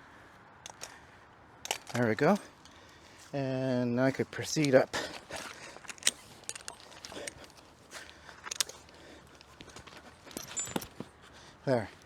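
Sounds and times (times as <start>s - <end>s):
climbing gear clicking: 0.6s - 1.0s, 1.6s - 3.0s, 4.3s - 11.2s
rope rustling: 4.2s - 12.0s.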